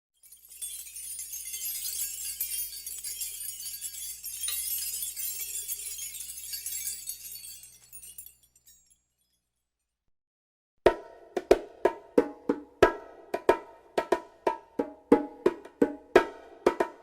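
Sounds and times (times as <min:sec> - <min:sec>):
jingling hand percussion: 0:00.2 - 0:09.8.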